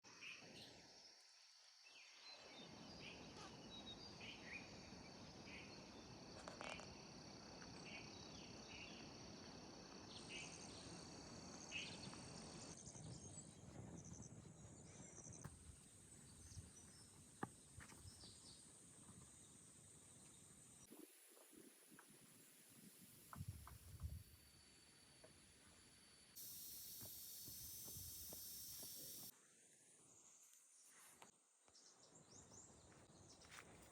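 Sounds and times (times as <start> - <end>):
insects chirring: 0.1 - 31.3.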